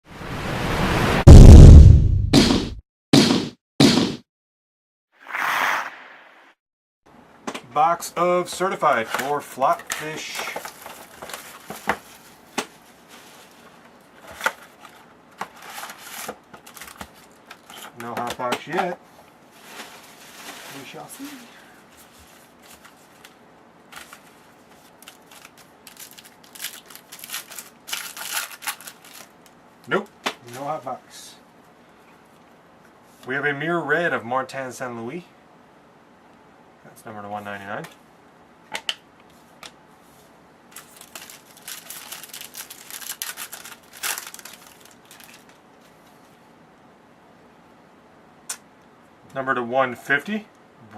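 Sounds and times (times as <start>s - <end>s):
plastic packaging crinkling: 9.8s - 18.0s, 22.2s - 29.6s, 40.7s - 46.1s.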